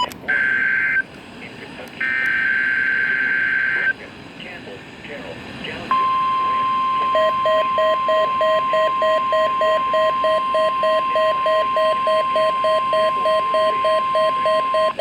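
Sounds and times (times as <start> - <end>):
steady alarm tone: 2.0 - 3.9, 5.9 - 15.0.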